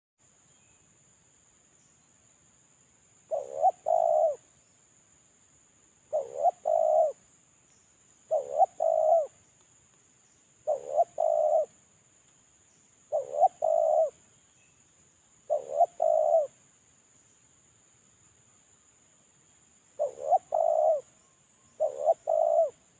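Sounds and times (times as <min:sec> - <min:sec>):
dove cooing: 0:03.3 - 0:04.4, 0:06.1 - 0:07.2, 0:08.3 - 0:09.4, 0:10.6 - 0:11.8, 0:13.1 - 0:14.2, 0:15.5 - 0:16.6, 0:20.0 - 0:21.1, 0:21.8 - 0:22.9.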